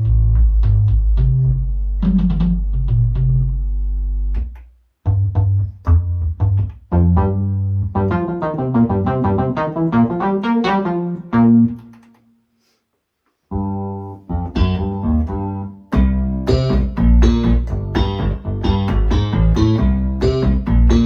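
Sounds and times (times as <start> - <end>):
synthesizer notes: 6.9 - 12.0.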